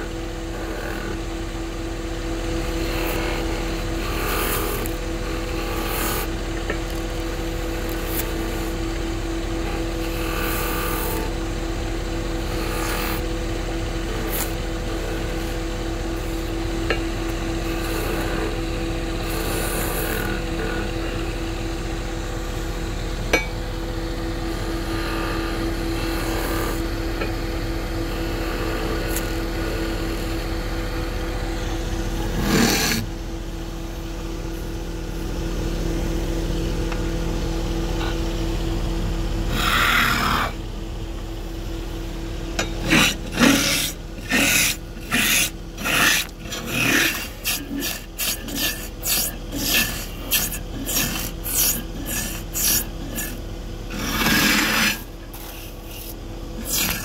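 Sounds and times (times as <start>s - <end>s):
tool scraping spinning wood: 0.0s - 37.2s, 37.8s - 57.0s
lathe motor hum: 0.0s - 57.0s.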